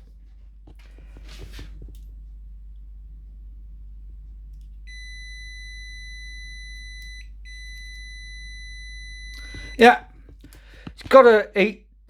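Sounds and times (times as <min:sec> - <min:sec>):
multimeter high-pitched beep: 0:04.9 - 0:10.0.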